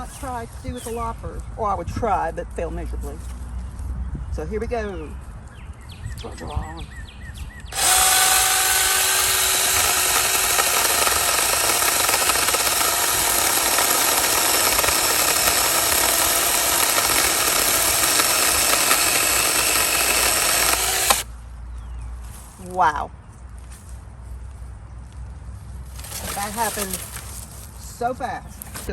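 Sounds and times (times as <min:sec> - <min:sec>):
mini chainsaw cutting branch: 0:07.7 - 0:21.3, 0:26.0 - 0:27.4.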